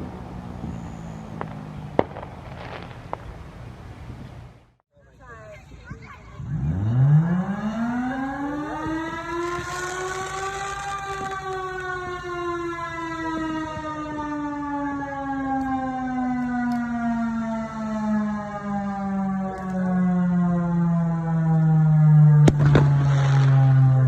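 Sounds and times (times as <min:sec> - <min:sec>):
siren winding up and down: 0:06.4 - 0:24.0.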